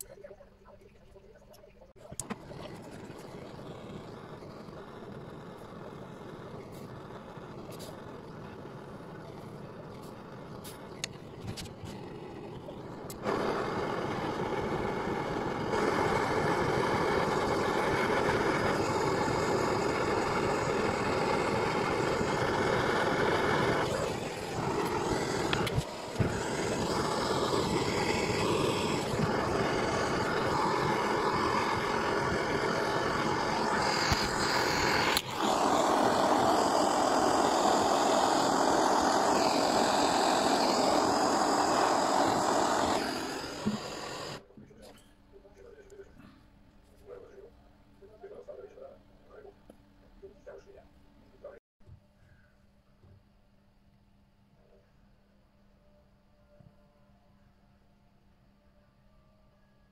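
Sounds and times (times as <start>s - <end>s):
power tool motor running: 2.3s - 44.4s.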